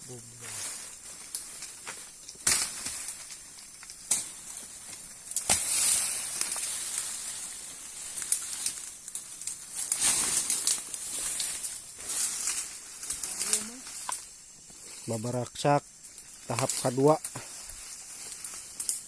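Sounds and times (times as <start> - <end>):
plants rustling and crackling: 0.0 - 19.0.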